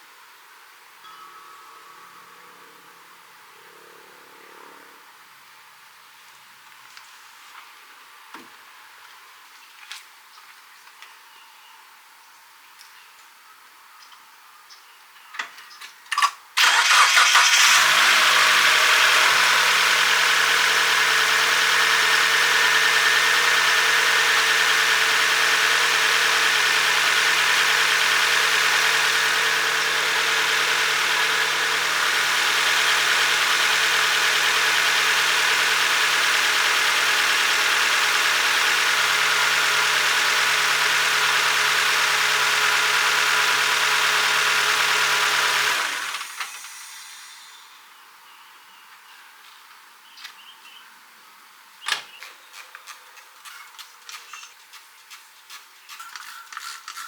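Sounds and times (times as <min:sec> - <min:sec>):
car engine starting and idling: 0:16.6 - 0:47.7.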